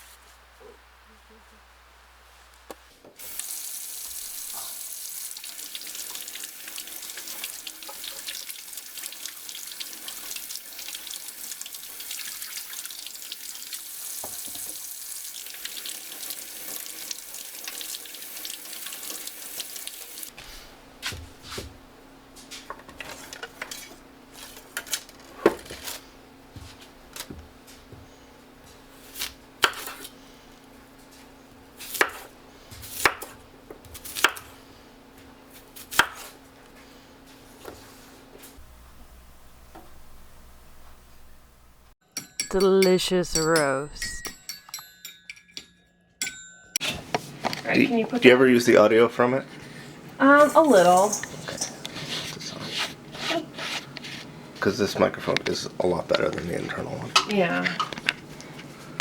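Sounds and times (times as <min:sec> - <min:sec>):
water running from tap into sink: 0:03.2 - 0:20.3, 0:50.3 - 0:51.8.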